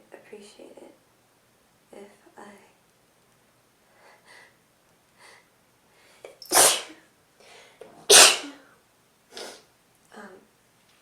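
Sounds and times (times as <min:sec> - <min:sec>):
person sneezing: 0:06.5 - 0:07.0, 0:08.1 - 0:08.6.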